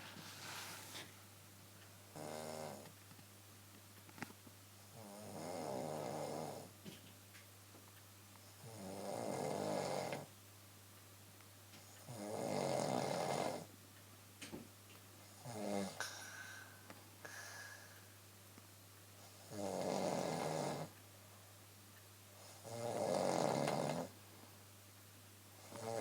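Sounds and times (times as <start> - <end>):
woman snoring: 2.2 - 2.8, 5.0 - 6.7, 8.7 - 10.3, 12.1 - 13.7, 15.5 - 18.0, 19.4 - 20.9, 22.6 - 24.1, 25.6 - 26.0.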